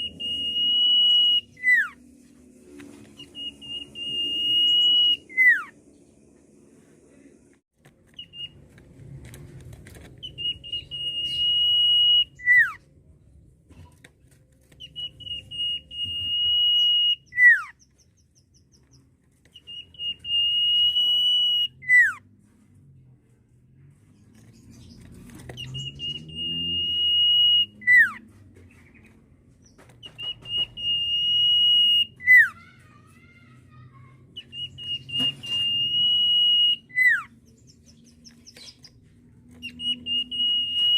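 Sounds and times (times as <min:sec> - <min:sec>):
bird whistling song: 0:00.0 - 0:02.0, 0:02.8 - 0:05.8, 0:08.1 - 0:08.6, 0:10.2 - 0:12.8, 0:14.7 - 0:22.2, 0:24.6 - 0:28.2, 0:29.7 - 0:32.6, 0:34.4 - 0:39.0, 0:39.6 - 0:40.9.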